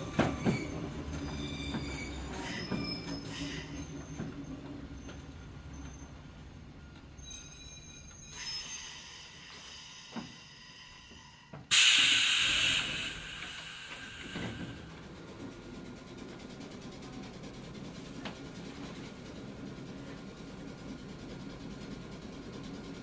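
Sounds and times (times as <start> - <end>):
railcar low rumble: 0.0 - 23.0
compressed air hiss: 11.7 - 14.8.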